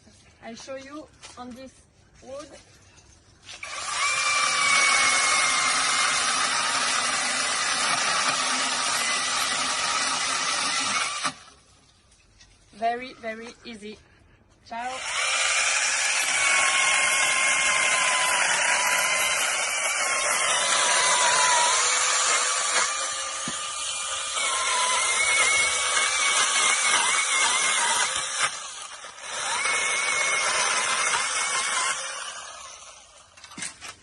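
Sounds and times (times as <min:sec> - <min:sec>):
electric chainsaw whine cutting wood: 0:03.6 - 0:11.5, 0:15.0 - 0:33.4.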